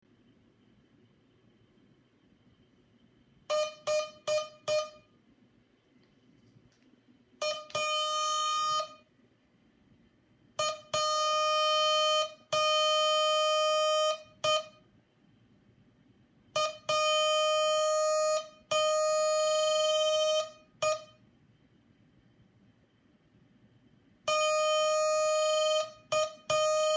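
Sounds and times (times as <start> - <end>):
morse code tone keyed by hand: 7.4 - 9.0.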